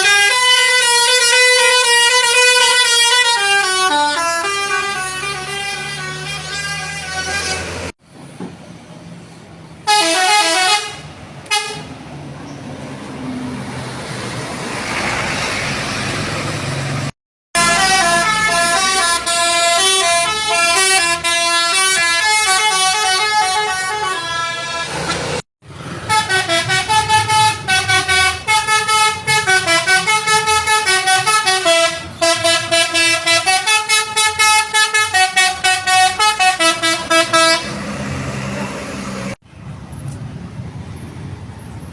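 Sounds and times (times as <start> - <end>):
multi-tone air horn melody: 0.0 - 7.9, 9.8 - 11.9, 17.6 - 25.1, 26.0 - 37.8.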